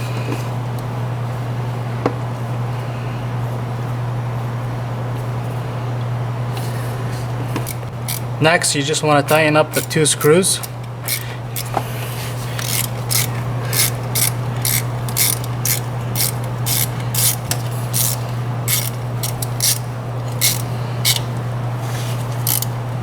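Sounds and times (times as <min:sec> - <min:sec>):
steady low hum: 0:00.0 - 0:23.0
ratchet wrench clicking: 0:07.7 - 0:08.3, 0:09.3 - 0:11.8, 0:12.5 - 0:21.4, 0:22.3 - 0:22.7.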